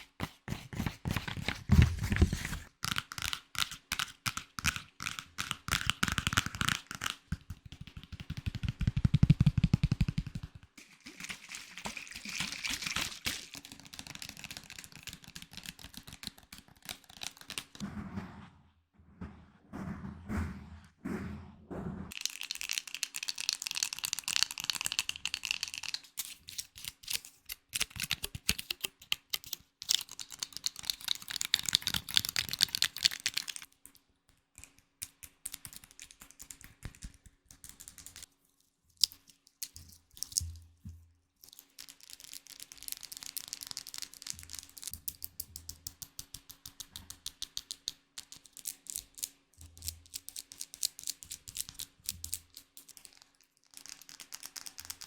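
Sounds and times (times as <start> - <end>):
rapid clicking and tapping: 4.6 - 10.8.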